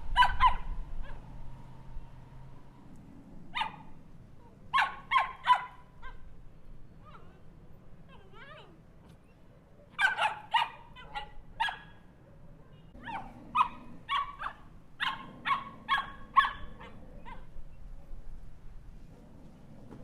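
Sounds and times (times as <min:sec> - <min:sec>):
small dog barking: 0:00.1 - 0:01.3, 0:03.5 - 0:06.3, 0:09.9 - 0:17.6.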